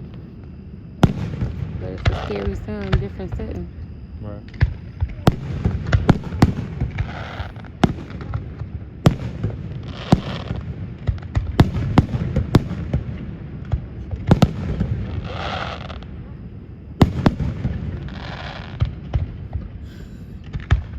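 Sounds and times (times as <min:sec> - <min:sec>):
low rumble of explosions: 0:00.0 - 0:20.9
firework shells bursting: 0:04.4 - 0:13.0.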